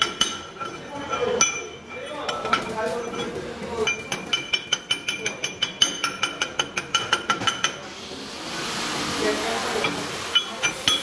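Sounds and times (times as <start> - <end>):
welding arc hissing: 7.9 - 11.0.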